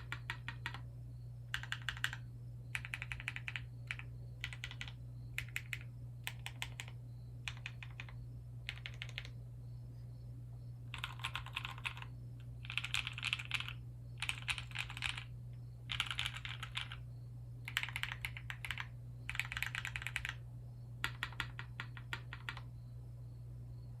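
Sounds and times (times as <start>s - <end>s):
mechanical keyboard typing: 0.0s - 0.8s, 1.5s - 9.3s, 10.9s - 15.3s, 15.9s - 17.0s, 17.7s - 20.4s, 21.0s - 22.7s
steady low hum: 0.0s - 24.0s.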